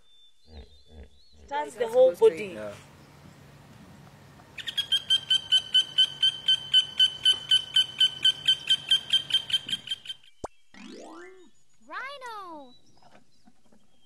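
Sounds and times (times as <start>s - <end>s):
rapid high chirps: 4.6s - 11.5s.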